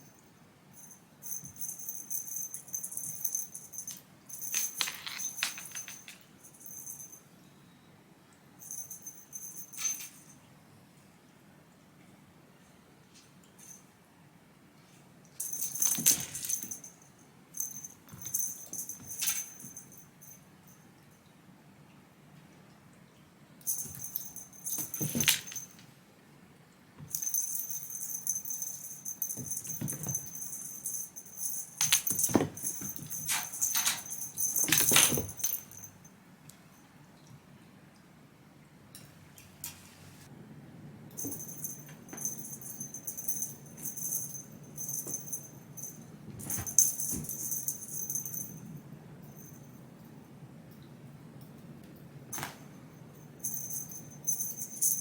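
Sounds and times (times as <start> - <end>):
small bell jingling: 0.0 - 7.3, 8.6 - 10.4, 15.4 - 20.9, 23.6 - 25.8, 27.1 - 36.1, 41.2 - 49.8, 52.4 - 55.0.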